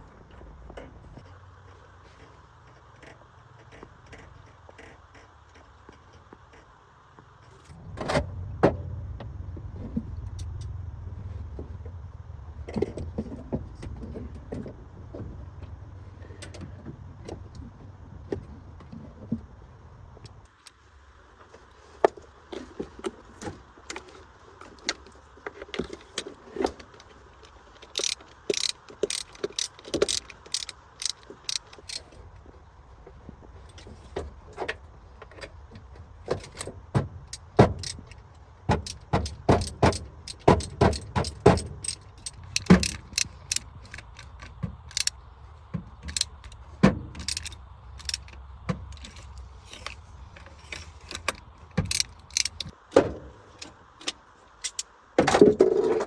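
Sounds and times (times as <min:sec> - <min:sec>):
car engine rumbling: 0:00.0 - 0:56.0
metallic tool clicks and knocks: 0:27.8 - 0:32.1, 0:36.3 - 0:52.8.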